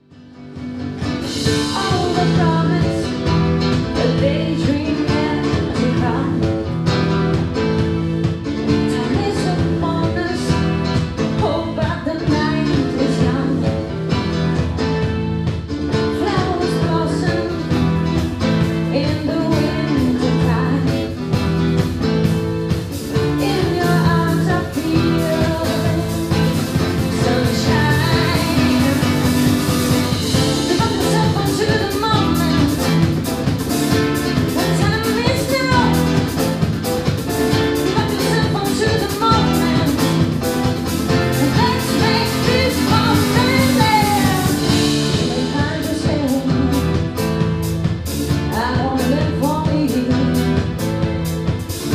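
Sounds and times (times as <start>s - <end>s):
guitar: 0.0s - 51.9s
driving drum beat: 0.4s - 51.9s
person singing: 23.2s - 33.0s, 37.6s - 47.3s.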